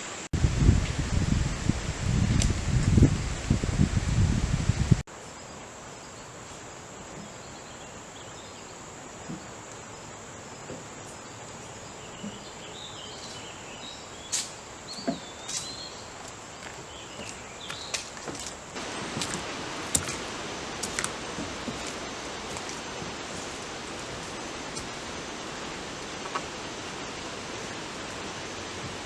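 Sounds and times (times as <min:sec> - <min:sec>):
wind rustling on microphone: 0:00.0 - 0:05.1, 0:11.6 - 0:29.0
insects droning: 0:05.1 - 0:29.0
bird calls: 0:11.9 - 0:18.0.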